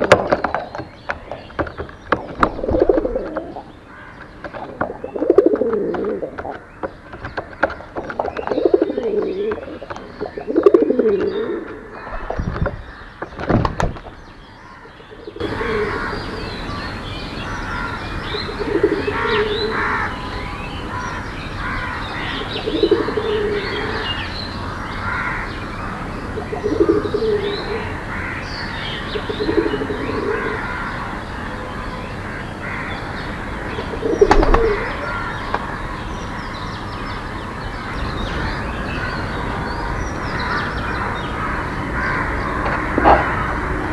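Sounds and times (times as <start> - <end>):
sharp knocks: 0.0 - 14.3, 34.2 - 35.7, 42.6 - 43.5
doves cooing: 0.0 - 43.9
small birds chirping: 0.0 - 43.9.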